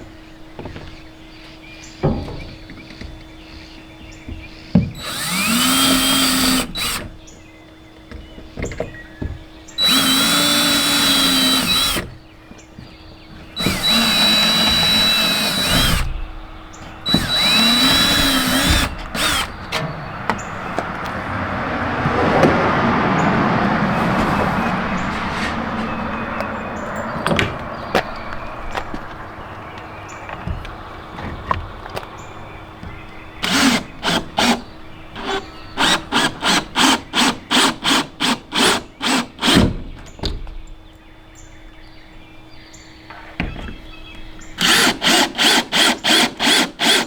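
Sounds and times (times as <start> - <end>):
cordless drill drilling: 5.0 - 7.2, 9.8 - 12.2, 13.5 - 16.3, 17.0 - 20.5, 33.4 - 39.6, 44.6 - 47.0.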